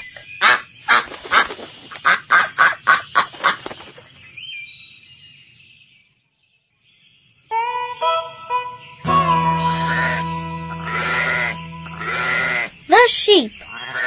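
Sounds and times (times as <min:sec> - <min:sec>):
duck quacking: 0:09.1 - 0:12.8, 0:13.7 - 0:14.0.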